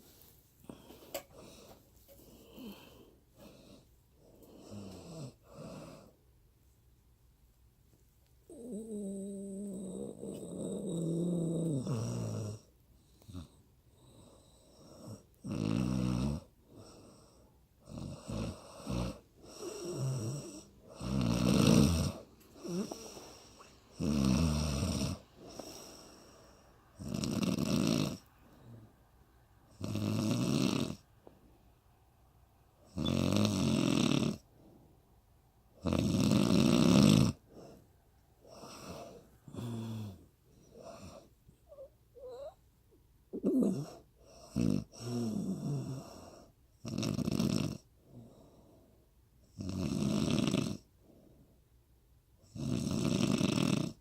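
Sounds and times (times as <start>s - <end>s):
woman snoring: 4.4s - 6.1s, 8.5s - 28.9s, 29.7s - 31.1s, 32.9s - 34.5s, 35.8s - 37.8s, 38.5s - 42.6s, 43.3s - 48.4s, 49.6s - 50.9s, 52.5s - 54.0s.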